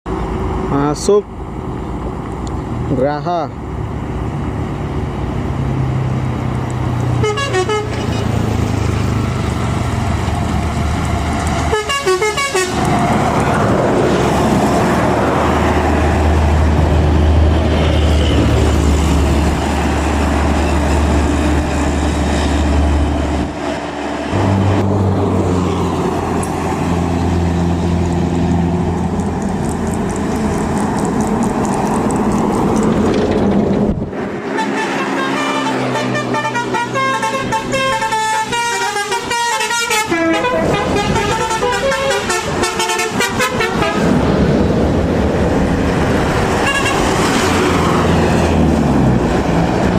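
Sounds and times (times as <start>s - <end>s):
coach diesel engine: 0.1s - 49.9s
musical horn bursts: 7.2s - 8.3s, 11.7s - 12.8s, 34.6s - 44.0s.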